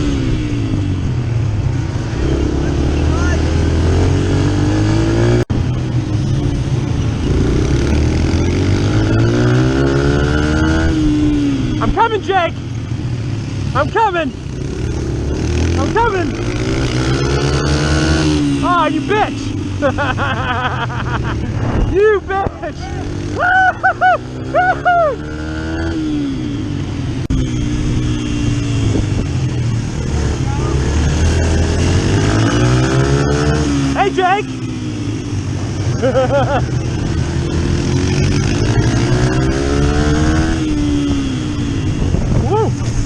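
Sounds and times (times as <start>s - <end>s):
dirt bike engine accelerating: 0.0s - 43.0s
constant low rumble: 18.8s - 25.2s, 40.6s - 43.0s
rider yelping: 22.0s - 25.7s, 42.4s - 43.0s.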